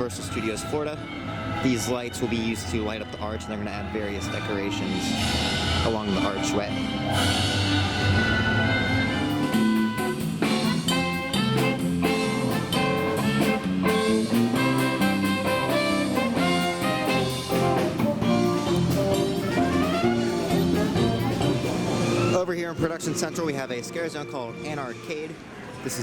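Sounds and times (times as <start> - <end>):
swing jazz with brass and drums: 5.0 - 22.4.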